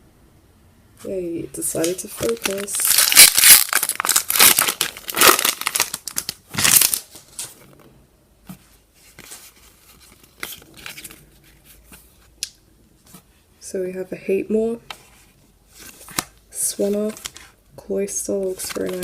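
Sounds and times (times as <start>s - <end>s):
foil wrapper tearing and crinkling: 1.8s - 7.2s.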